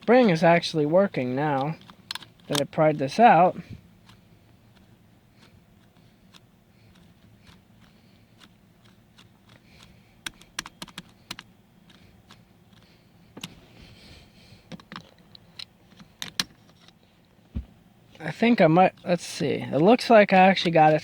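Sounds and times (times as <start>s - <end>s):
seat belt buckle clicking: 1.1s - 3.2s, 4.0s - 13.6s, 14.7s - 17.0s.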